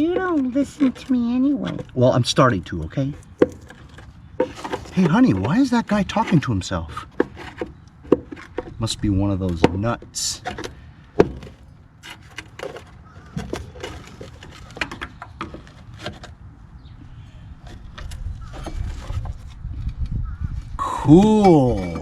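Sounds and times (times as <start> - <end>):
hand tools clicking and knocking: 0.0 - 16.4, 21.1 - 22.0
person exclaiming: 20.8 - 22.0.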